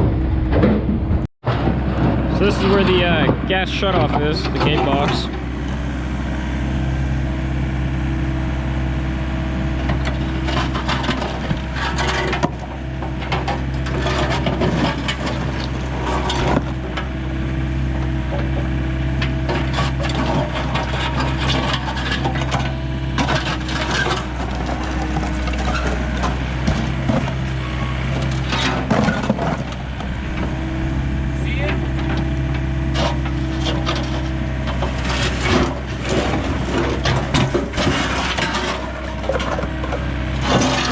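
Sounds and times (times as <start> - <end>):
excavator engine running: 0.0 - 40.9
scraping and crunching of material: 32.9 - 40.9.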